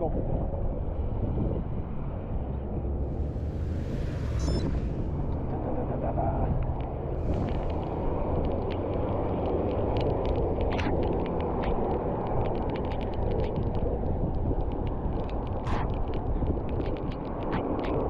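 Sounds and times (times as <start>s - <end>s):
wind noise on microphone: 0.0s - 18.0s
traffic: 0.4s - 18.0s
sharp ticks: 7.5s - 18.0s.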